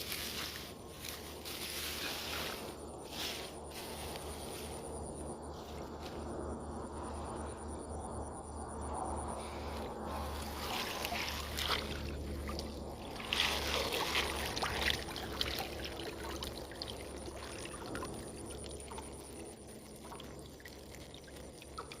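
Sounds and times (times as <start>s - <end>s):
water splashing and sloshing: 0.0s - 6.2s, 9.4s - 22.0s
steady low rumble: 0.0s - 22.0s.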